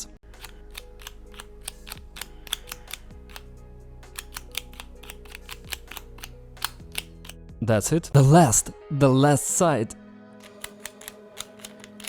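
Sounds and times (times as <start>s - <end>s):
quiet background music: 0.0s - 12.0s
plastic puzzle clicking: 0.3s - 3.5s, 4.1s - 7.4s, 10.4s - 12.0s.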